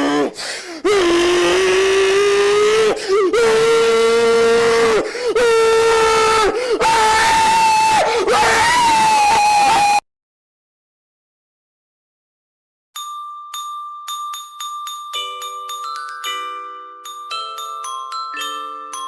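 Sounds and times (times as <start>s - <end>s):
person screaming long notes: 0.0s - 10.0s.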